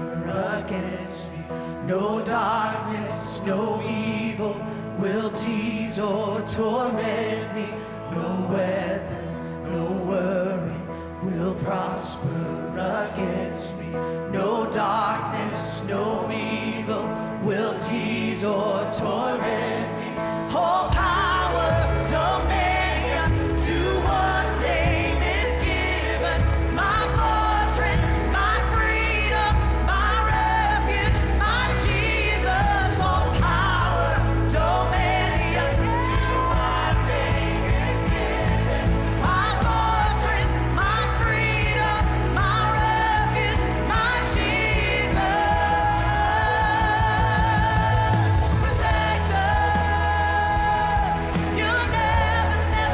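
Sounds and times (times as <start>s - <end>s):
live worship band music: 0.0s - 52.9s
people singing: 0.0s - 52.9s
heavy bass: 17.8s - 52.9s.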